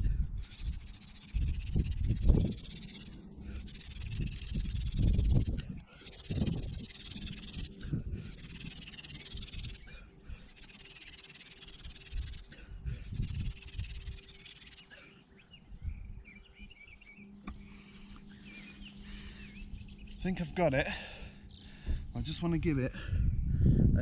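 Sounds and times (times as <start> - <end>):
wind buffeting microphone: 0.0 - 10.7, 11.7 - 14.4, 15.5 - 17.0, 17.6 - 24.0
birds chirping: 0.0 - 23.5
wooden spindle grinding on board: 0.4 - 12.5, 13.1 - 15.0.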